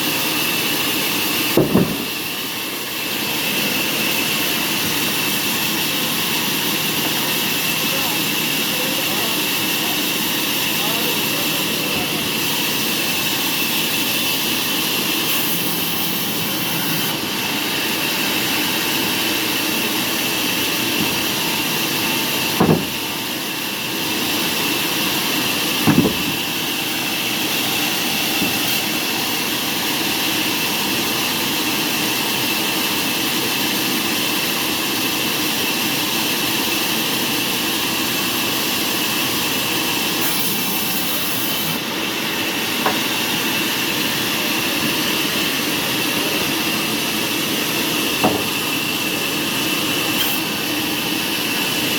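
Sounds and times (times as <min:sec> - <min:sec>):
sawmill machinery whining: 0:00.0 - 0:51.9
loud thumps: 0:01.6 - 0:02.2, 0:22.5 - 0:23.2, 0:25.8 - 0:26.5.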